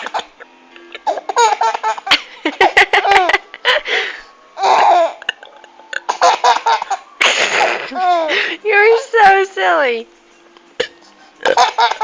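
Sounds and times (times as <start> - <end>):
person laughing: 0.0 - 4.0, 6.2 - 8.6.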